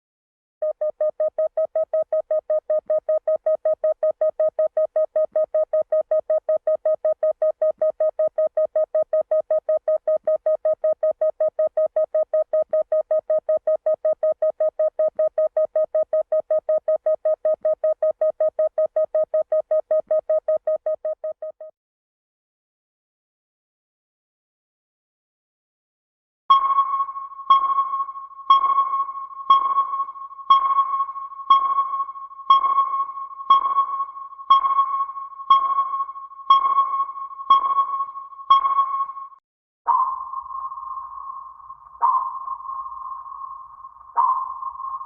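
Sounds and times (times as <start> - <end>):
sonar beeps: 26.5 - 39.3, 39.9 - 45.0.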